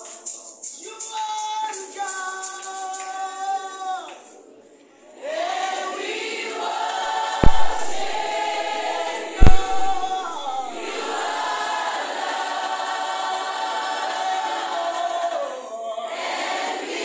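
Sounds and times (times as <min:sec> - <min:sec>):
choir singing gospel song: 0:05.0 - 0:17.0
heavy low thumps: 0:07.4 - 0:11.3.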